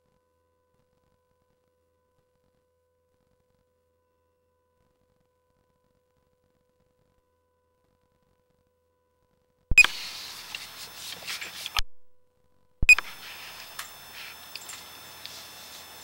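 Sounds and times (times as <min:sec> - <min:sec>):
short electronic beep: 0:09.7 - 0:10.9, 0:12.8 - 0:13.9
faint hiss: 0:09.7 - 0:11.8, 0:12.8 - 0:16.0
click: 0:09.7 - 0:11.9, 0:12.8 - 0:16.0
small clicks: 0:09.7 - 0:11.9, 0:12.8 - 0:16.0.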